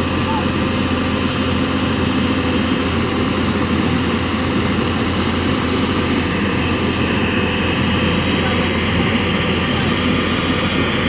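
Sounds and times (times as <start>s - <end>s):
heavy diesel engine droning: 0.0s - 11.0s.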